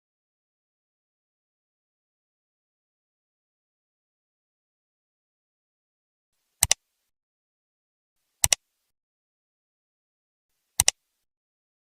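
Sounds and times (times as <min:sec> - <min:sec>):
sharp double clicks: 0:06.6 - 0:06.8, 0:08.4 - 0:08.6, 0:10.8 - 0:11.0.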